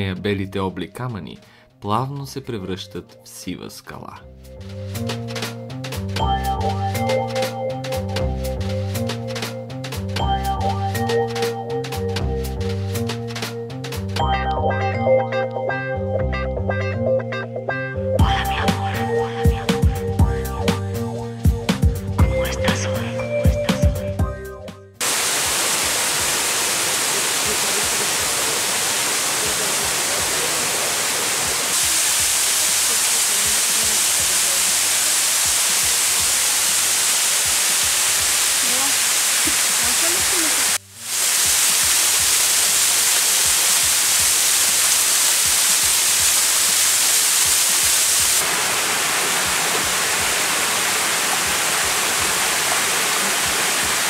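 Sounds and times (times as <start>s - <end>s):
music: 0.0s - 25.0s, 31.4s - 48.4s, 49.7s - 54.0s
waterfall rushing: 25.0s - 54.0s.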